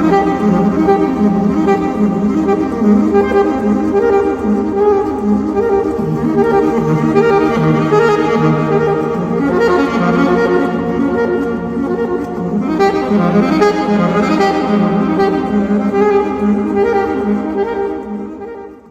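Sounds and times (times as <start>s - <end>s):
instrumental background music: 0.0s - 18.8s.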